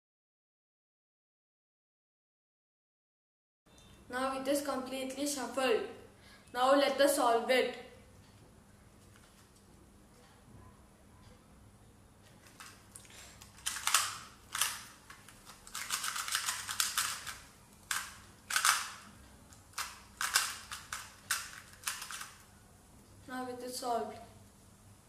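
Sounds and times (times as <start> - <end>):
puzzle cube twisting clicks: 13.4 - 22.4.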